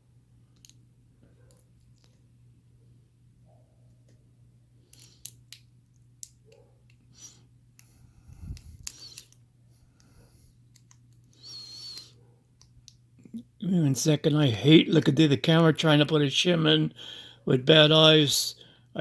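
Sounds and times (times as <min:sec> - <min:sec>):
steady low hum: 0:00.0 - 0:19.0
small clicks and light scraping: 0:00.5 - 0:02.2, 0:04.9 - 0:07.1, 0:07.8 - 0:13.4.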